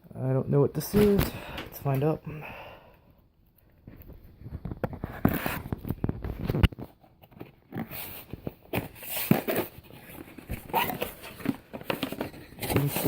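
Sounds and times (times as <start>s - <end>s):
packaging rustling and tearing: 5.0s - 13.0s.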